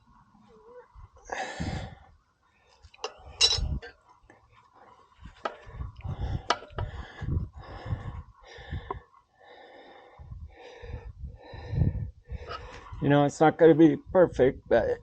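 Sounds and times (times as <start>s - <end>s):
man breathing hard: 1.2s - 2.1s, 4.7s - 13.0s.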